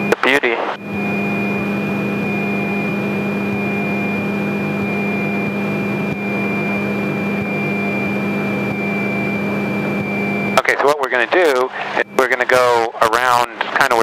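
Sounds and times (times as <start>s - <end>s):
light aircraft engine droning: 0.0s - 14.0s
thin steady high tone: 0.8s - 10.7s.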